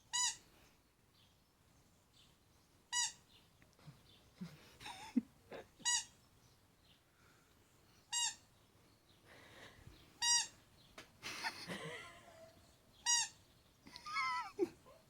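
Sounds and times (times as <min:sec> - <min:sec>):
squeaky dog toy squeaking: 0:00.1 - 0:00.4, 0:02.9 - 0:03.2, 0:05.8 - 0:06.1, 0:08.1 - 0:08.4, 0:10.2 - 0:10.6, 0:13.0 - 0:13.4.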